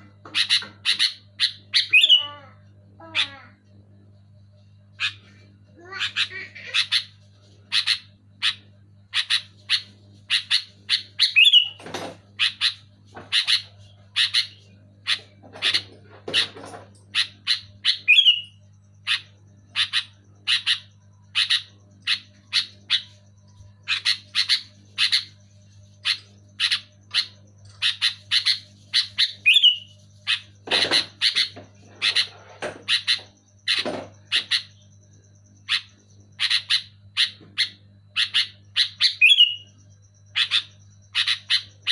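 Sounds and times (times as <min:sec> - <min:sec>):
bird chirping sharply: 0:07.7 - 0:11.8, 0:17.1 - 0:25.4, 0:26.0 - 0:32.3, 0:32.9 - 0:41.9.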